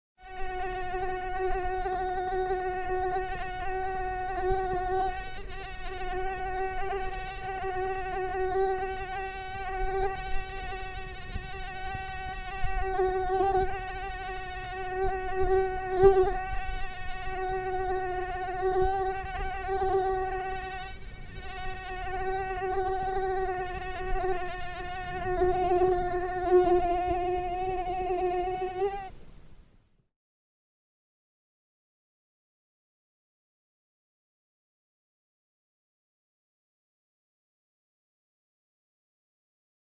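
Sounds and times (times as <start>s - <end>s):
mosquito buzzing: 0.2s - 29.2s.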